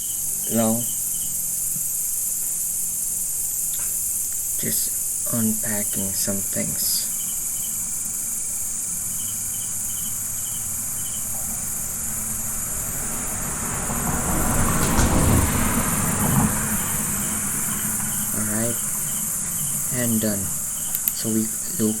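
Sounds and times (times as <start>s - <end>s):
insects chirping: 0.0s - 22.0s
vehicle passing: 10.1s - 20.0s.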